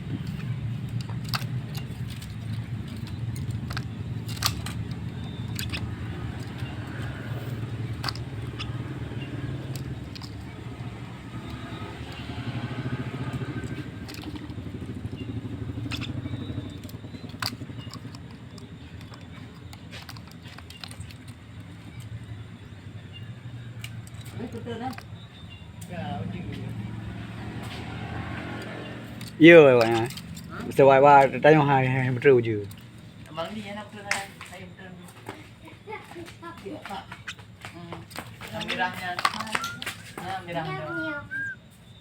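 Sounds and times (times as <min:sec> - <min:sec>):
motor engine running: 0:00.0 - 0:33.5
sharp clicks: 0:00.1 - 0:22.4, 0:38.1 - 0:40.4.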